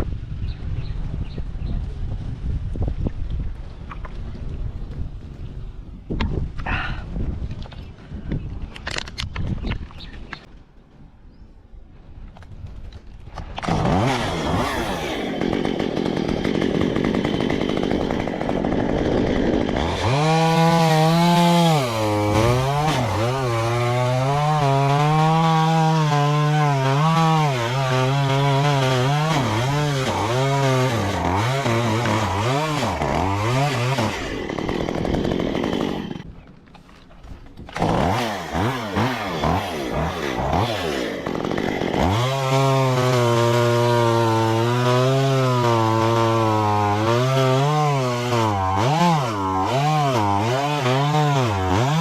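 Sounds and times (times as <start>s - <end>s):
chainsaw revving and cutting wood: 13.4s - 36.3s, 37.6s - 52.0s.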